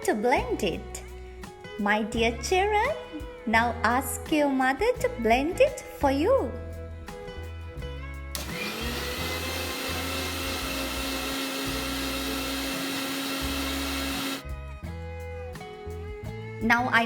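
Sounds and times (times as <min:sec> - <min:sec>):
kitchen blender running: 0:08.4 - 0:14.4.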